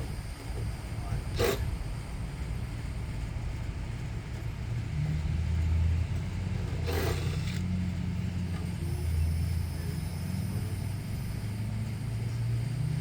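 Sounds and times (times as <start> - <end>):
engine rumbling: 0.0 - 13.0
scrape or clatter: 1.3 - 1.7, 6.6 - 7.7.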